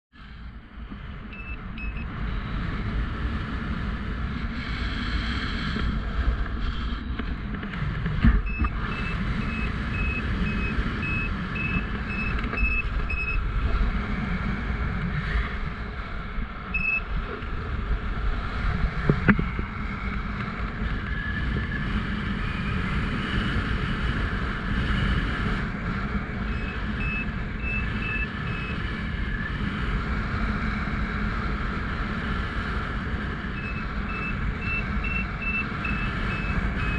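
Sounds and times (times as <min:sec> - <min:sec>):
wind rumbling on microphone: 0:00.1 - 0:36.9
variometer high beeps: 0:01.3 - 0:02.1, 0:08.4 - 0:13.4, 0:16.7 - 0:17.1, 0:26.4 - 0:28.8, 0:33.5 - 0:36.9.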